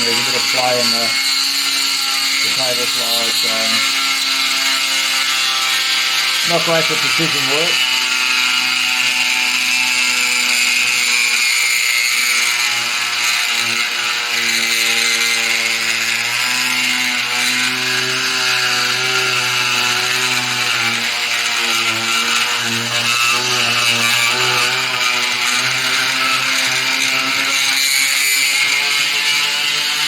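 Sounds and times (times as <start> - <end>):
mill spindle motor running: 0.0 - 15.1.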